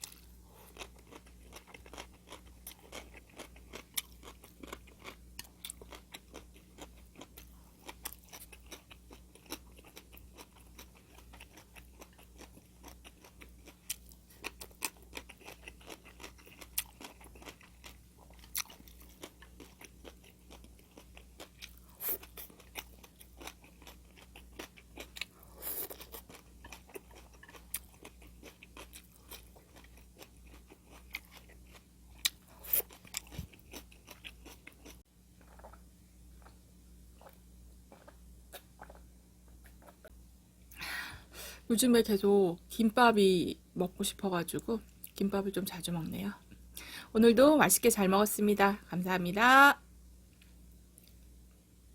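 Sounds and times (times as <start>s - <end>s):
chewing and crunching food: 0.0s - 40.8s.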